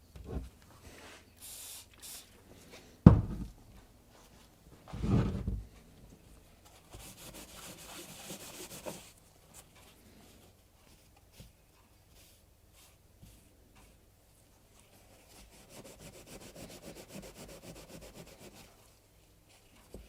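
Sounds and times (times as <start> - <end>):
sharp knock on workbench: 3.1 - 3.5.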